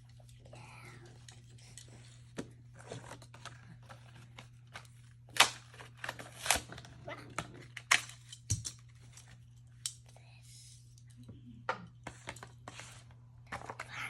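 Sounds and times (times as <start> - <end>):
cardboard and plastic tearing: 2.8 - 8.4.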